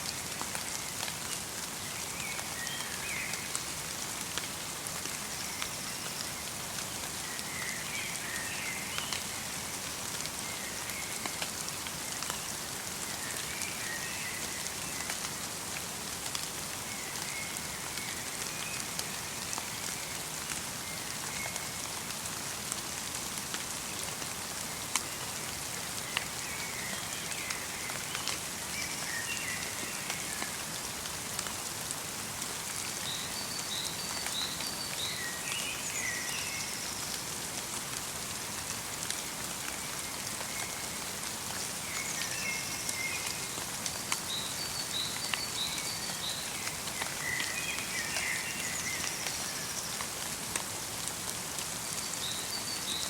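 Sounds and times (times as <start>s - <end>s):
rain and snow pattering: 0.0s - 53.0s
songbirds chirping: 32.6s - 37.5s, 39.0s - 50.3s.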